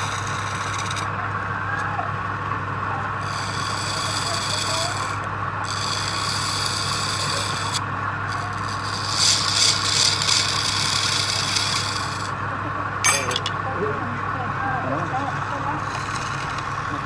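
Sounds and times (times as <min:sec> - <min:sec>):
turning tool scraping wood: 0:00.0 - 0:01.1, 0:03.2 - 0:12.4, 0:15.0 - 0:17.0
wood lathe motor hum: 0:00.0 - 0:01.4, 0:03.0 - 0:12.5, 0:14.9 - 0:17.0.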